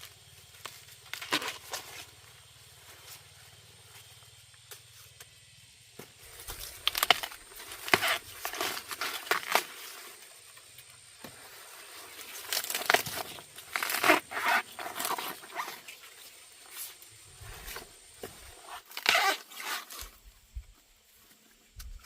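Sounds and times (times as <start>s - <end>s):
rustling and crackling: 6.0s - 22.0s.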